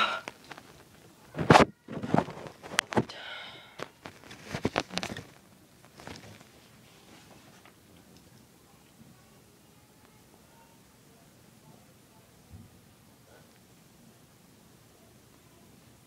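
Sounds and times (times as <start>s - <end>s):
person sniffling: 0.0s - 0.3s.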